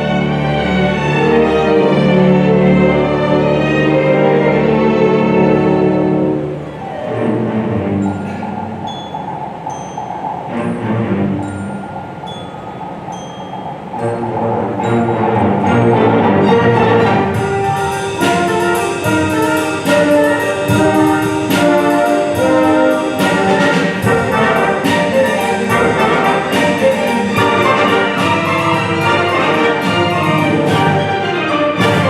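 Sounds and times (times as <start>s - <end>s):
symphony orchestra playing: 0.0s - 32.0s
brass section: 14.2s - 32.0s.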